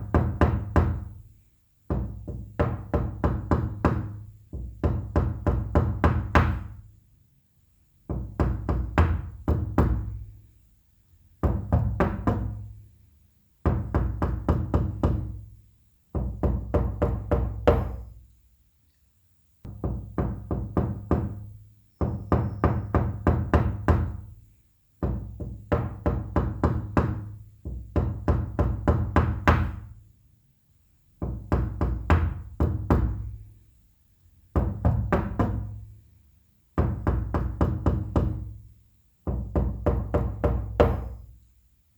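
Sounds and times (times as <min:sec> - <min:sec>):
knocking on wooden door: 0:00.0 - 0:01.2, 0:01.9 - 0:06.8, 0:08.1 - 0:10.2, 0:11.4 - 0:12.7, 0:13.6 - 0:15.4, 0:16.1 - 0:18.2, 0:19.7 - 0:24.3, 0:25.0 - 0:29.9, 0:31.2 - 0:33.4, 0:34.6 - 0:35.8, 0:36.8 - 0:38.6, 0:39.2 - 0:41.3.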